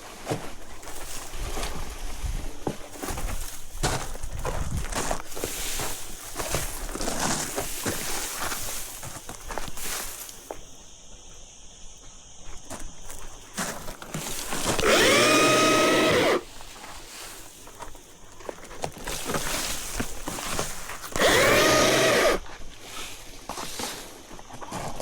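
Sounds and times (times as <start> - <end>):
chainsaw motor whining: 14.4 - 16.6, 21.0 - 22.5.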